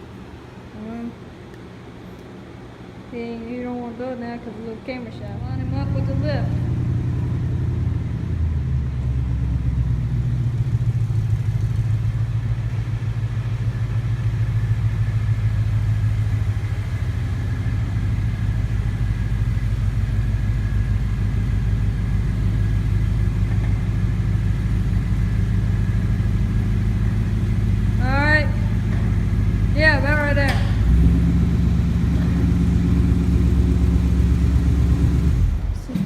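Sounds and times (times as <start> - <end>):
car engine idling: 0.0 - 36.0.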